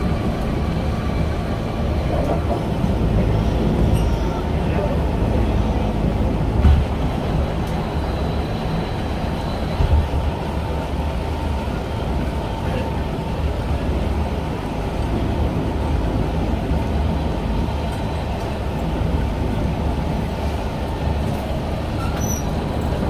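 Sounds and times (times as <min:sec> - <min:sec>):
train wheels rumbling on track: 0:00.0 - 0:23.0
train bump: 0:06.5 - 0:07.8, 0:09.6 - 0:10.4.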